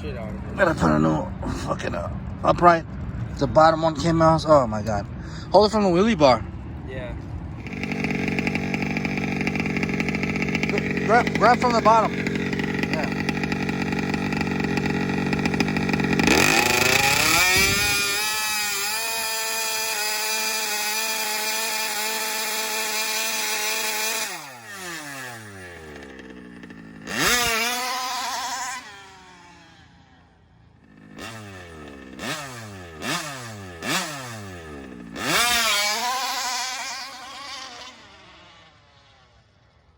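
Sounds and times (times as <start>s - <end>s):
small two-stroke engine revving: 7.6s - 39.9s.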